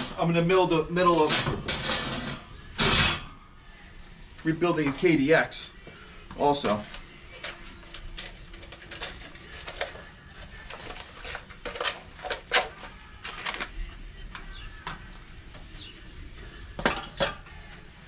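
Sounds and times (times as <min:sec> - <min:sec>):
metal tools clanking: 0:01.1 - 0:03.3.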